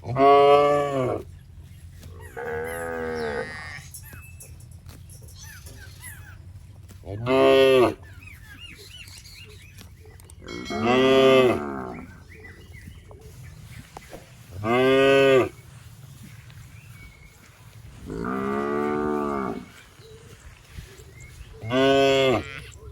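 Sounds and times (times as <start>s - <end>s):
cattle mooing: 0.0s - 1.3s, 2.2s - 3.8s, 7.1s - 8.0s, 10.4s - 12.2s, 14.6s - 15.6s, 18.0s - 19.8s, 21.6s - 22.9s.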